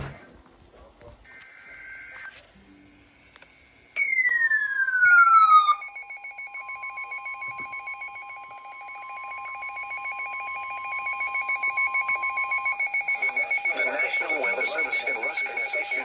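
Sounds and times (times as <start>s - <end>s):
falling electronic tone: 4.0s - 6.0s
rapid pulsing two-tone beep: 4.0s - 16.0s
steady alarm tone: 4.0s - 16.0s.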